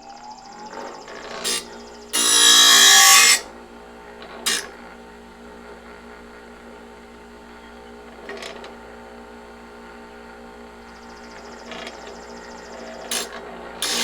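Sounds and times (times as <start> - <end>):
bench grinder motor hum: 0.4 - 14.0
blade grinding on wheel: 0.6 - 3.6, 4.2 - 4.8, 11.3 - 14.0.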